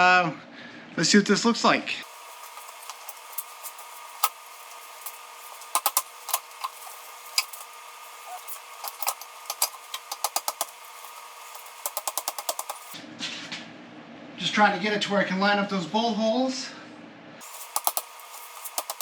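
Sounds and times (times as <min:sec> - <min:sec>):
steady hum: 0:02.0 - 0:13.0, 0:17.4 - 0:19.0.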